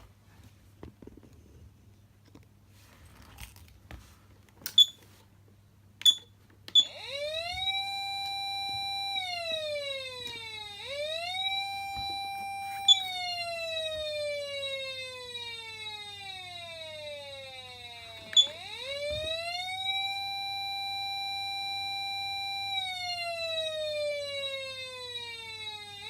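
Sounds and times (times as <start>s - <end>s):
electronic siren sweeping: 6.8s - 26.0s.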